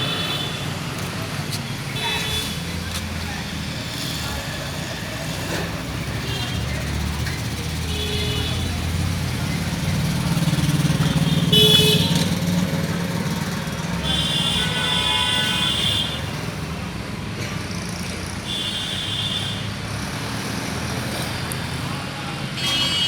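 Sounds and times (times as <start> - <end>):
vehicle engines running: 0.0 - 22.9
car horns honking: 11.0 - 12.5, 14.0 - 16.4, 22.5 - 23.0.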